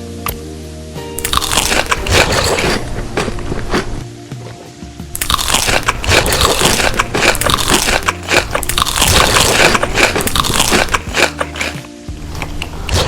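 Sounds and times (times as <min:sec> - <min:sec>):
crunching crisp food: 0:01.2 - 0:04.0, 0:05.1 - 0:13.0.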